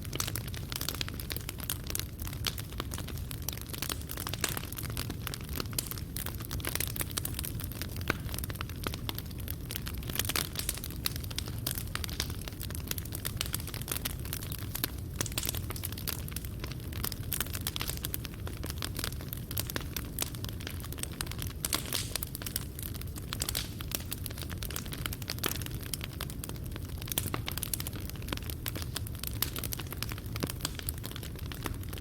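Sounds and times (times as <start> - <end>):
fire crackling and popping: 0.0 - 32.0.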